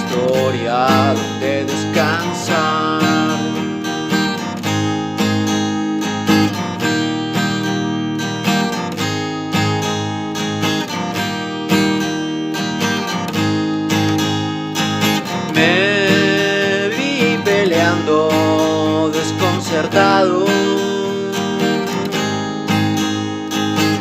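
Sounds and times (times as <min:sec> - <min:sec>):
strummed acoustic guitar chords: 0:00.0 - 0:24.0.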